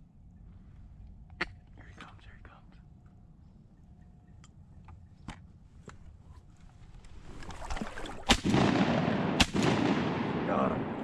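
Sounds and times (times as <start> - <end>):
shotgun blasts: 8.3 - 11.0.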